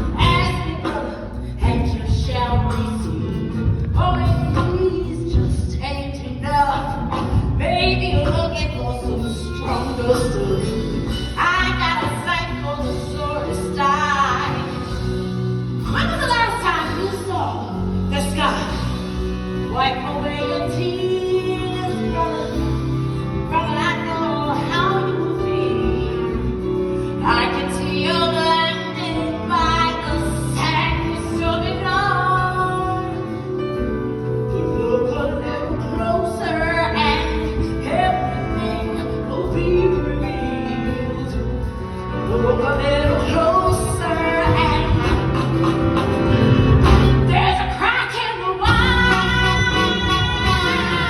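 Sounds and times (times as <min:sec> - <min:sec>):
band accompaniment: 0:00.0 - 0:51.0
person singing: 0:47.2 - 0:51.0.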